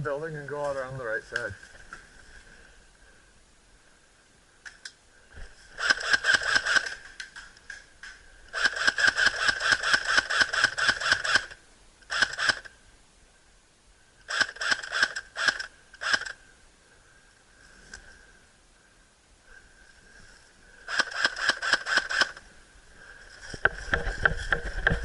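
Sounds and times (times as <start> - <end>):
airsoft gun firing bursts: 5.8 - 7.1, 8.5 - 12.7, 20.9 - 22.4.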